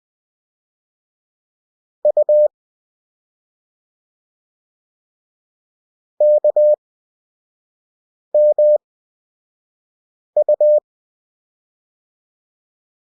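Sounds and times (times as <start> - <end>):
morse code beeps: 2.1 - 2.5, 6.2 - 6.8, 8.4 - 8.8, 10.4 - 10.8.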